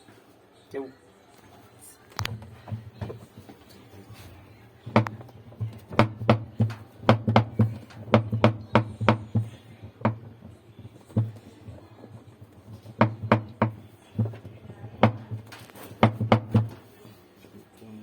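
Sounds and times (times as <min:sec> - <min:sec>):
sharp knocks and taps: 0:04.9 - 0:16.9.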